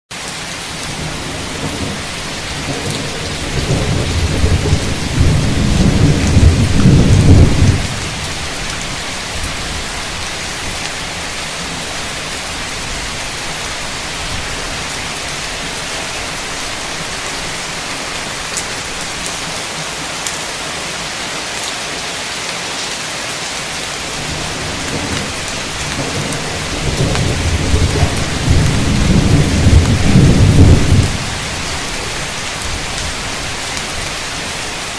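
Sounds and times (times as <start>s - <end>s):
heavy rain hissing: 0.1s - 34.9s
rolling thunder: 0.8s - 8.7s, 24.1s - 33.3s.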